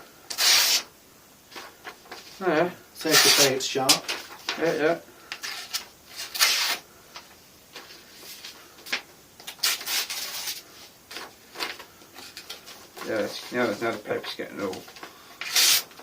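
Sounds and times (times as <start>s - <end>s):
knife slicing paper: 0.3s - 0.9s, 9.5s - 10.6s, 15.4s - 16.0s
paper rustling: 7.7s - 16.0s.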